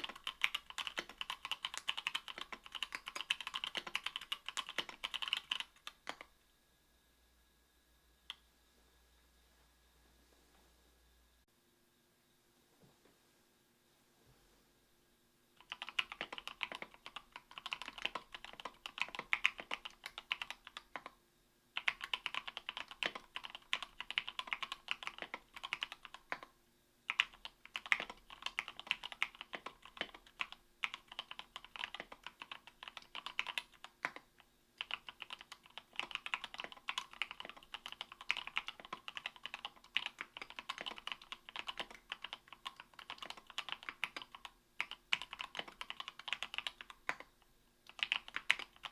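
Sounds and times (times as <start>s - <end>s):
mechanical keyboard typing: 0.0s - 6.3s, 15.6s - 21.2s, 21.8s - 26.5s, 27.1s - 48.9s.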